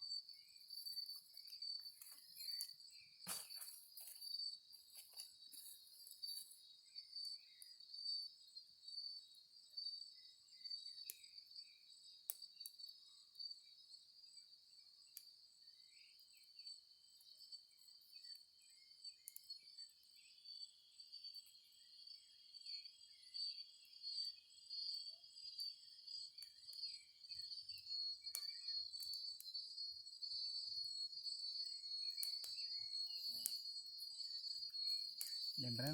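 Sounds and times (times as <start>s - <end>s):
insects chirring: 0.0s - 35.9s.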